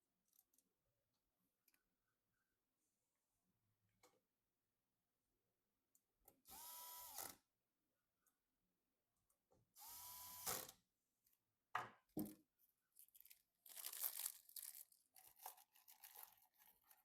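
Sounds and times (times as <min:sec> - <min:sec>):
electric screwdriver whirring: 0:06.5 - 0:07.4, 0:09.8 - 0:10.7
crackly rustling of parts: 0:12.9 - 0:17.0.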